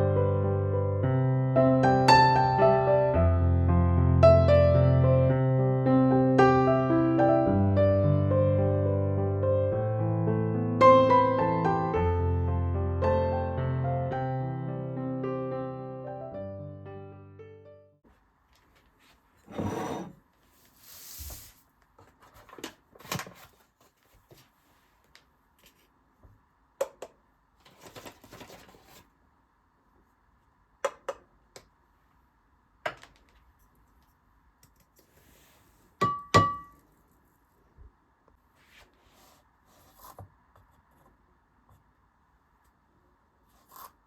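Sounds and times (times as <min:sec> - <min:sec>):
soft piano music: 0:00.0 - 0:18.0
dish clinking with ringing tone: 0:36.0 - 0:36.8.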